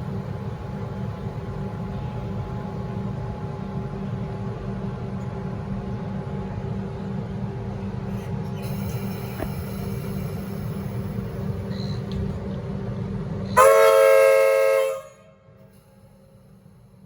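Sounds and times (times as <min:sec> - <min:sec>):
electric train horn chord blast: 0:13.5 - 0:15.7.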